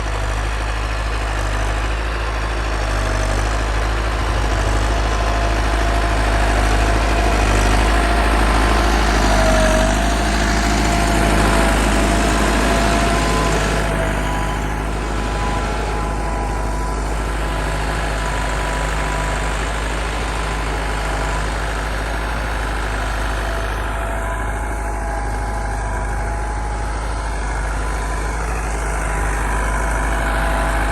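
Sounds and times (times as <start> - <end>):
tractor diesel engine running: 0.0 - 30.9.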